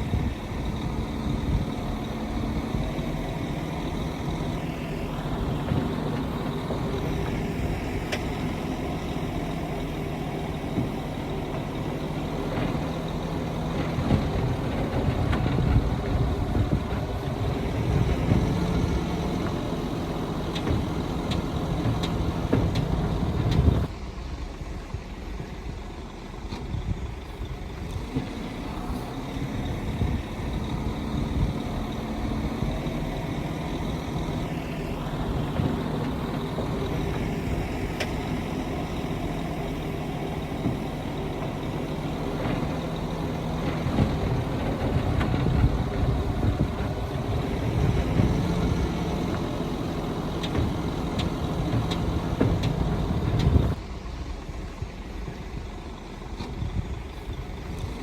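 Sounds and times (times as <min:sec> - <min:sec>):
heavy diesel machinery droning: 0:00.0 - 0:58.0
knocks and clanks: 0:20.5 - 0:23.9, 0:40.6 - 0:53.8.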